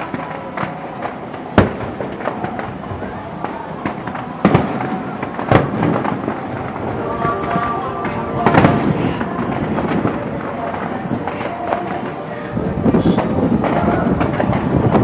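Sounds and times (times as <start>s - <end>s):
fireworks bangs: 0.0s - 15.0s
rapid fireworks crackling: 0.0s - 15.0s.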